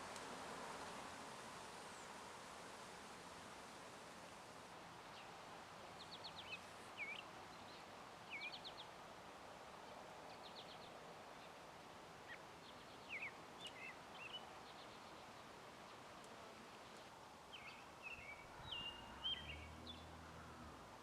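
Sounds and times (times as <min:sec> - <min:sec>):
steady background hiss: 0:00.0 - 0:21.0
small bird singing: 0:06.0 - 0:08.9, 0:12.3 - 0:15.2, 0:17.5 - 0:20.2.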